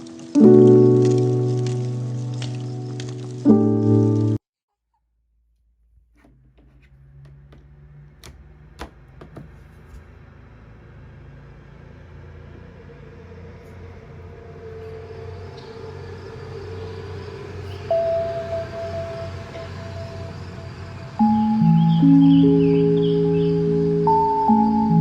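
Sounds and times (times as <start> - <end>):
low rumbling noise: 9.5 - 25.0.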